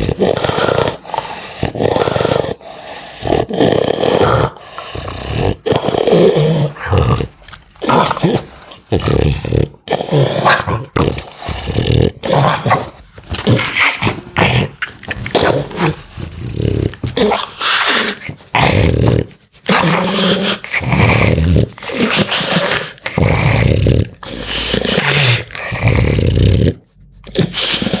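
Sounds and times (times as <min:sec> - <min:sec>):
dog snoring: 0:00.0 - 0:28.0.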